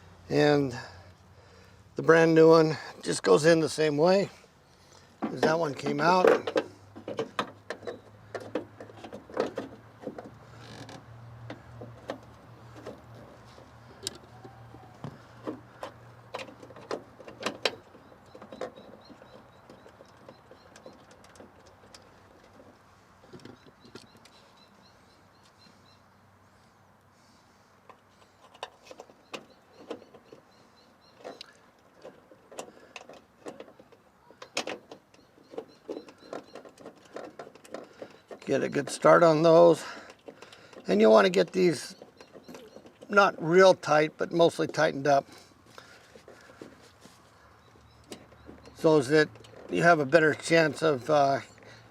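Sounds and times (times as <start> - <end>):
metal parts clicking and knocking: 5.2 - 13.4
metal and plastic clicks and knocks: 5.2 - 24.4, 31.1 - 43.2, 47.6 - 51.9
bird chirping: 11.9 - 22.6, 23.2 - 27.4, 28.1 - 32.9, 33.6 - 51.9.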